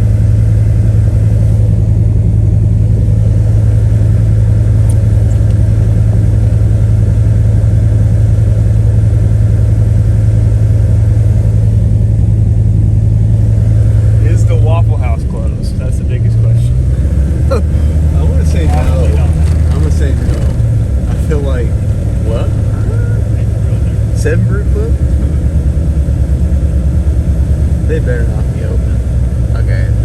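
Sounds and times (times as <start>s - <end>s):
pickup engine drone: 0.0s - 30.0s
road noise: 0.0s - 30.0s.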